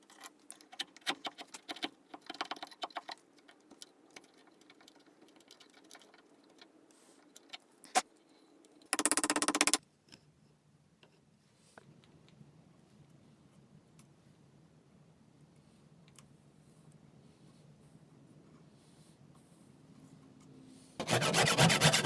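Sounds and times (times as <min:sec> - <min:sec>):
loud click: 0:09.0 - 0:09.8
rapid even rattle: 0:09.0 - 0:09.8
tools and wood clicking: 0:09.0 - 0:09.8.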